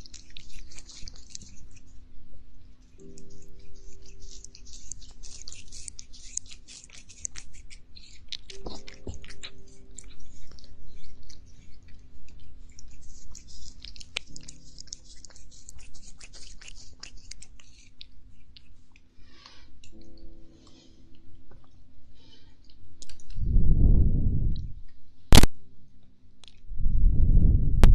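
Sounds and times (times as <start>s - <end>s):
cat crunching food: 0.0s - 2.2s, 2.8s - 20.1s.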